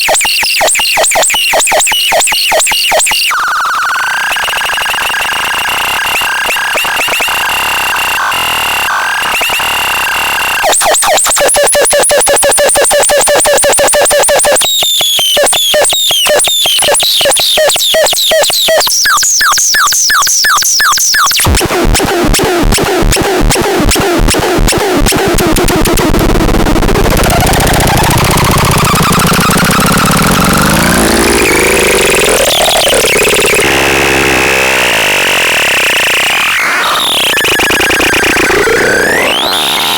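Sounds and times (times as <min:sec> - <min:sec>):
rapid electronic bleeps and chirps: 0:00.0 - 0:39.9
buzzy synthesizer tones: 0:01.5 - 0:39.9
wavering synthesizer glides: 0:26.8 - 0:39.5.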